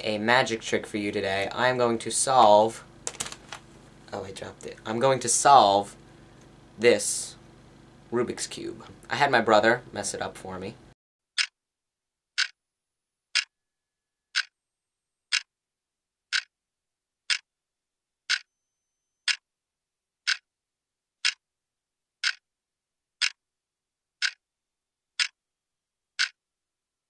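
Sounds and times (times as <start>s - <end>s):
clock ticking: 12.4s - 12.6s, 16.3s - 16.5s, 18.3s - 18.5s, 20.2s - 20.4s, 22.2s - 22.4s, 23.2s - 23.4s, 24.2s - 24.4s.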